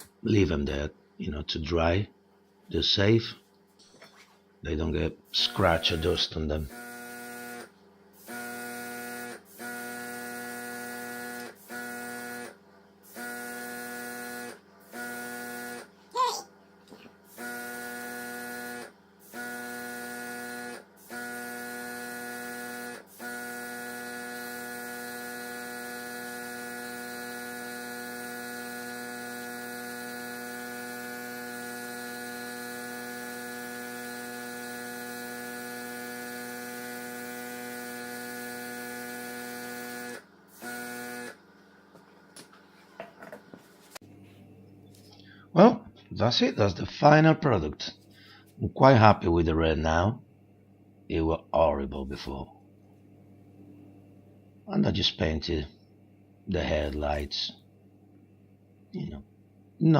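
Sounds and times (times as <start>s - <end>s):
electrical hum with whine: 0.0s - 59.9s.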